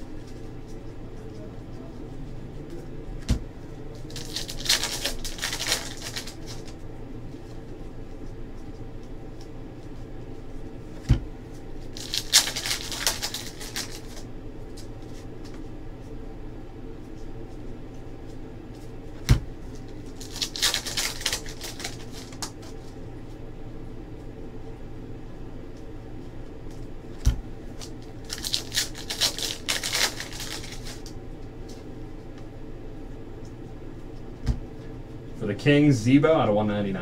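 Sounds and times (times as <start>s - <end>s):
steady low hum: 0.0s - 37.0s
trading cards rustling: 3.7s - 6.8s, 11.5s - 15.3s, 19.7s - 22.8s, 27.7s - 31.2s.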